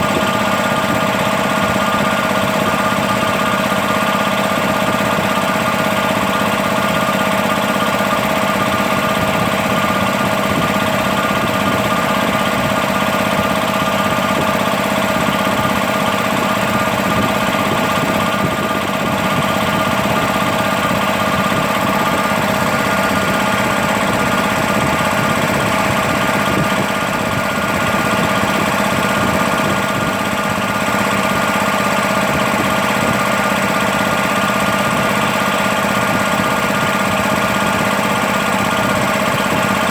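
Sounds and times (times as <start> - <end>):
air compressor running: 0.0 - 39.9.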